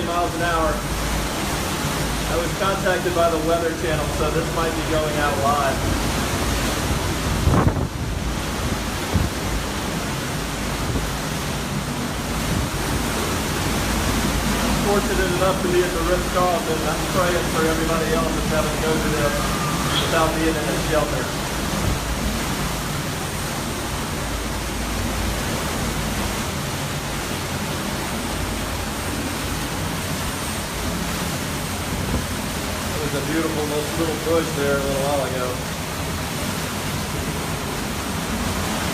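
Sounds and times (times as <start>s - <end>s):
driving rain: 0.0s - 38.9s
hurricane wind roaring: 0.0s - 38.9s
wind buffeting microphone: 4.2s - 33.4s.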